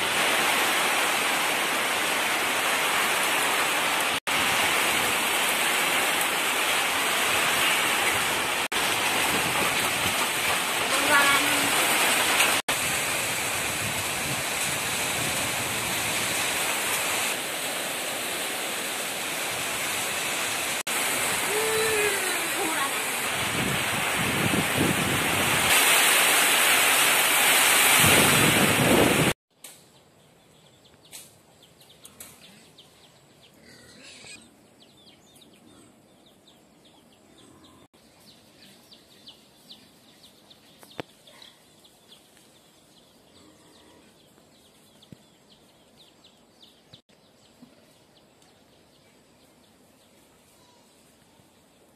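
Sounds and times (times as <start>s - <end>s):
heavy rain pouring: 0.0s - 29.4s
distant animal call: 33.6s - 34.5s.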